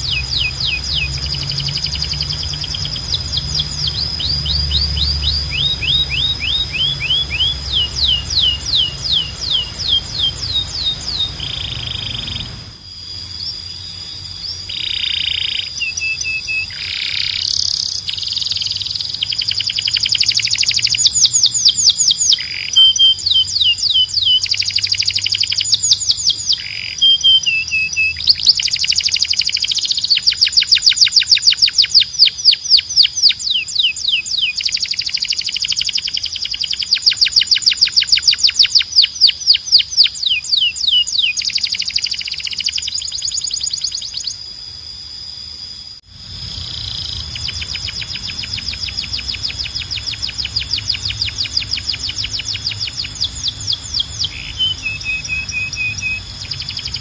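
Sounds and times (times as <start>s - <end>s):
canary singing: 0.0s - 44.5s, 46.1s - 57.0s.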